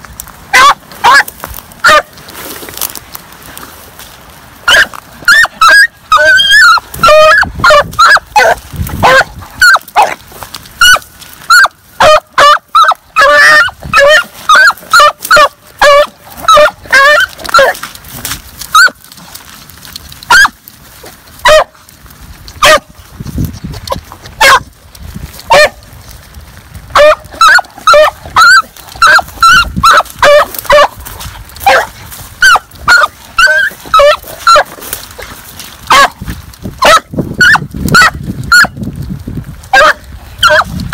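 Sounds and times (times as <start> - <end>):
hound barking: 0.5 - 2.2, 4.6 - 17.9, 18.7 - 19.1, 20.3 - 20.6, 21.4 - 21.9, 22.6 - 22.9, 24.4 - 24.7, 25.5 - 25.8, 26.9 - 38.8, 39.7 - 40.7.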